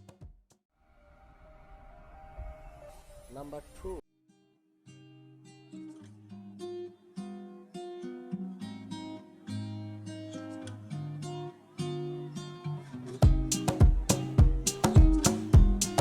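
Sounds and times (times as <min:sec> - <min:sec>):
plucked acoustic guitar: 0:04.4 - 0:16.0
loud drum beat: 0:13.2 - 0:16.0.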